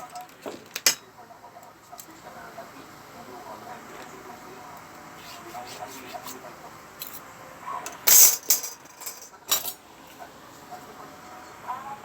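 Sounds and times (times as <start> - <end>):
metal objects being handled: 7.9 - 9.8.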